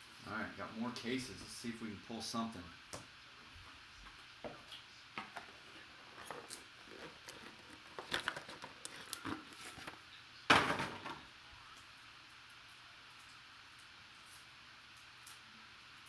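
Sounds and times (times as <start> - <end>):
small clicks and rustles: 4.0 - 10.1, 11.7 - 16.0
cardboard box being opened: 5.3 - 10.0.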